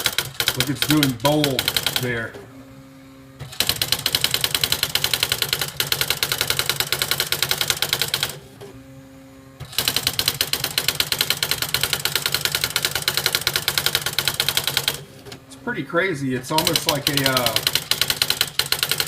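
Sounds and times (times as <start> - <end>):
typewriter daisy wheel striking: 0.0 - 2.1, 3.5 - 8.4, 9.7 - 15.0, 16.6 - 19.0
faint hum: 0.5 - 18.5.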